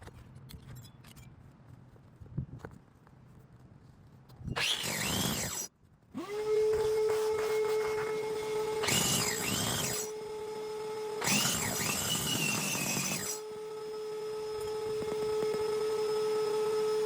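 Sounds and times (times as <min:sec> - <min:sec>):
shop vacuum motor hum: 0:04.6 - 0:17.0
vacuum sucking up grit: 0:06.3 - 0:10.0.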